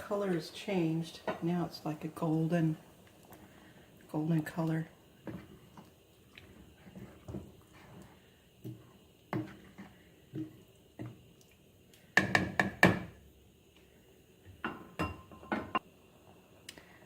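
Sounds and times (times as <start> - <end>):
utensil knocking on cooking pot: 12.2 - 13.2.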